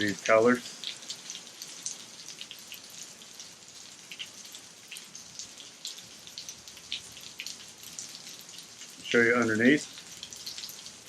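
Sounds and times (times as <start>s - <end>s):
faint hiss: 8.7s - 11.0s.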